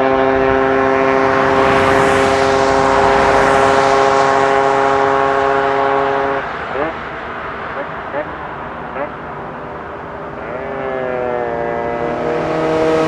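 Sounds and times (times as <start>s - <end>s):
rushing noise: 0.0s - 10.4s.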